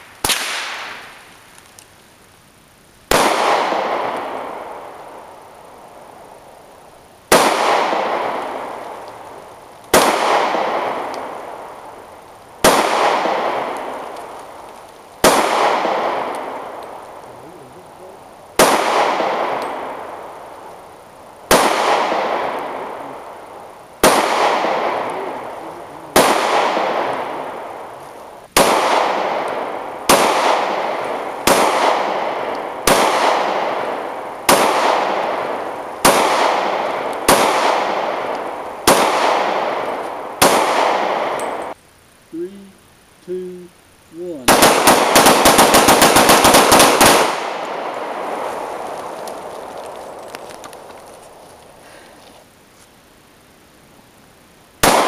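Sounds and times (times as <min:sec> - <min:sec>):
gunshots with long echo: 0:00.0 - 0:01.3, 0:03.1 - 0:06.3, 0:07.2 - 0:17.3, 0:18.5 - 0:20.8, 0:21.4 - 0:41.8, 0:44.4 - 0:50.8, 0:54.8 - 0:55.0.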